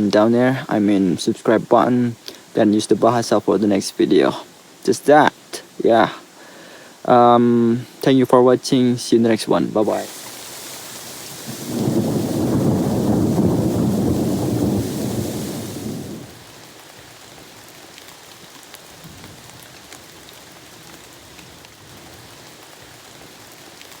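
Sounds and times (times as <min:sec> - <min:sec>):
heavy rain: 0:00.0 - 0:24.0
raindrops ticking: 0:00.0 - 0:24.0
thunder rumbling: 0:09.8 - 0:16.5.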